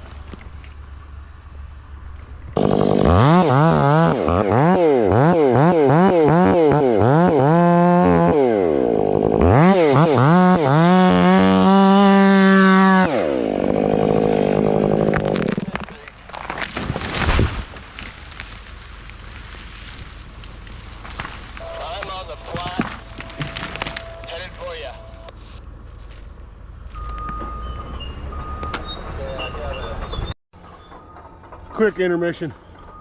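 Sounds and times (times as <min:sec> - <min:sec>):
chainsaw engine revving: 0:02.6 - 0:15.9.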